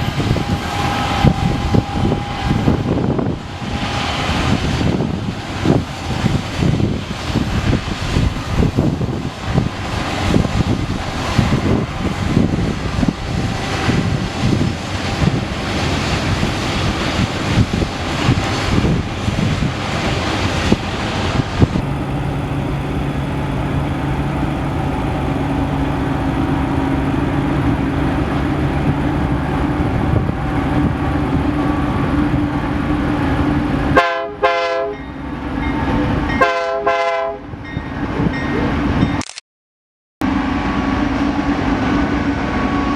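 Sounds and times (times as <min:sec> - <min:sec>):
engine drone: 0:00.0 - 0:34.0
train rumbling and clattering: 0:00.0 - 0:39.2, 0:40.2 - 0:42.9
chime-like train horn: 0:00.3 - 0:03.0, 0:36.4 - 0:37.4.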